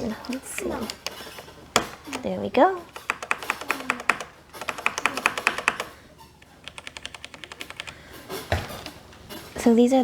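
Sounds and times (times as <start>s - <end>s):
mechanical keyboard typing: 0.3s - 8.0s.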